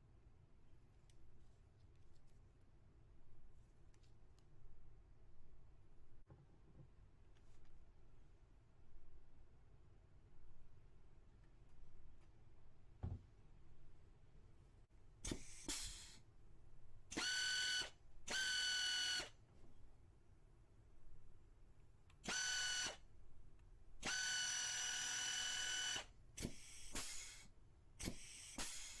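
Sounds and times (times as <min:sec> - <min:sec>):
pneumatic tool air motor whine: 0:15.3 - 0:16.2, 0:17.1 - 0:19.3, 0:22.2 - 0:23.0, 0:24.0 - 0:29.0
air hissing: 0:26.5 - 0:29.0.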